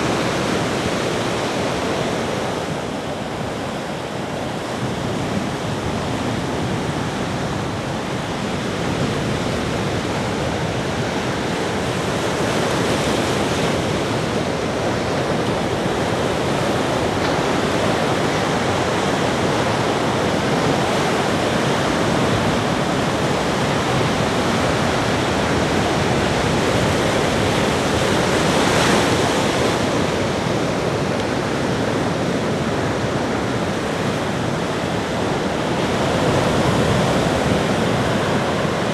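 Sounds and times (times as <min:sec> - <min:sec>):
ocean waves breaking: 0:00.0 - 0:38.9.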